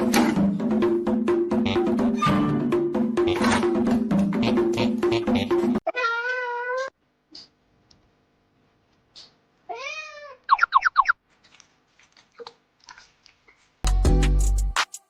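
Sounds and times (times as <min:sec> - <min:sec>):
cat meowing: 0:05.9 - 0:07.0, 0:09.7 - 0:10.5.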